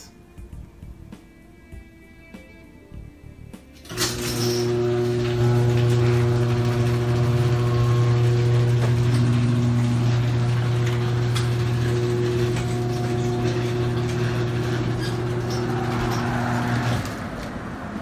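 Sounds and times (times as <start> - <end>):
garage door opener motor: 3.7 - 18.0.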